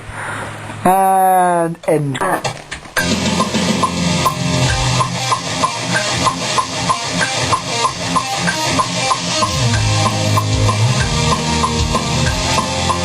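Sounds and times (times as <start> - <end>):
distorted electric guitar: 3.0 - 13.0
drum kit playing: 3.0 - 13.0.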